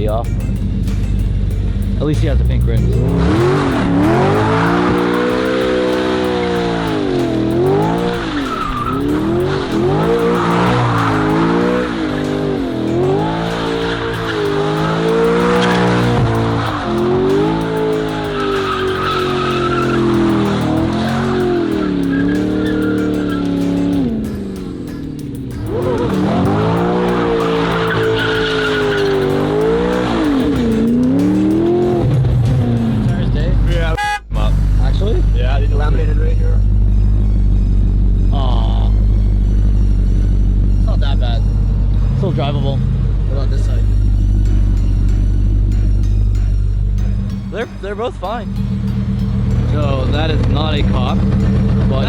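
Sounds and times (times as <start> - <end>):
car engine revving: 0.0 - 52.0
tyres squealing on pavement: 3.1 - 24.1, 25.8 - 30.9.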